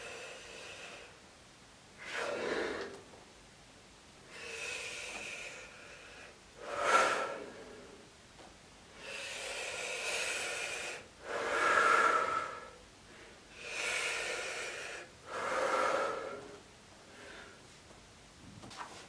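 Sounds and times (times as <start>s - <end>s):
person breathing slowly and deeply: 0.0s - 1.2s, 2.0s - 3.1s, 4.2s - 8.1s, 8.9s - 17.8s.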